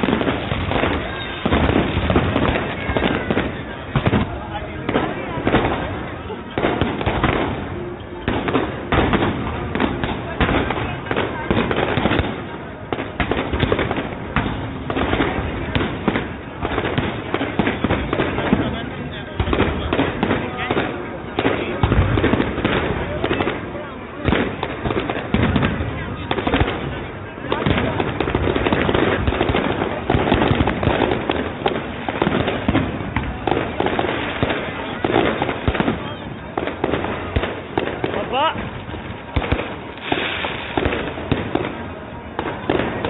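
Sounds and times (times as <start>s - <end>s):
fireworks bangs and pops: 0.0s - 43.0s
fireworks crackling: 0.0s - 43.0s.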